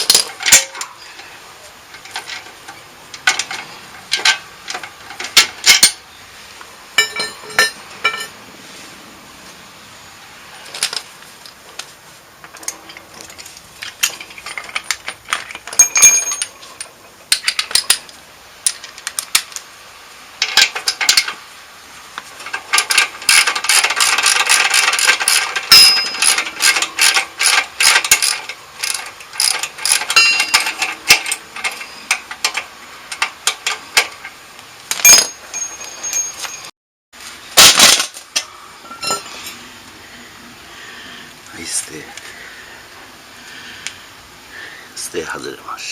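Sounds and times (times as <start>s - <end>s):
metal tools clinking: 0.0s - 1.3s, 1.9s - 6.0s, 7.0s - 8.4s, 12.4s - 19.5s, 22.4s - 34.3s, 34.9s - 36.7s, 37.6s - 39.6s.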